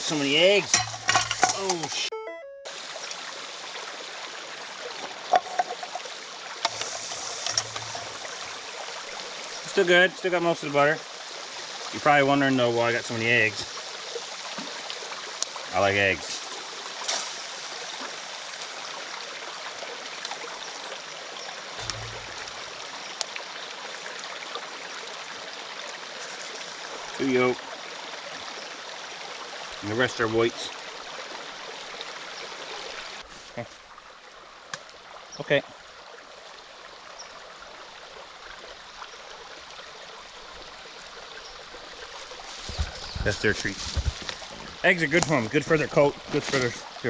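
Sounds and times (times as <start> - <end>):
running water: 0.0 - 47.0
steady rushing hiss: 6.6 - 12.2.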